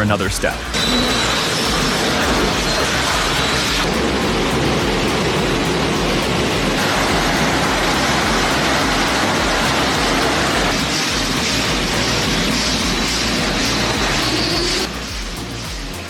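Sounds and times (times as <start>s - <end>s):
industrial shredder grinding: 0.6s - 16.0s.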